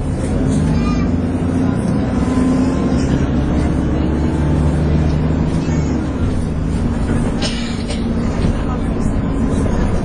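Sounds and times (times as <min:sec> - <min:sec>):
bus engine drone with whine: 0:00.0 - 0:10.0.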